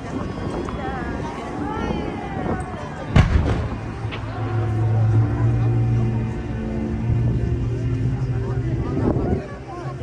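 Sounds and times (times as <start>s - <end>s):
music with held notes: 2.8s - 10.0s
steady deep bass: 3.1s - 10.0s.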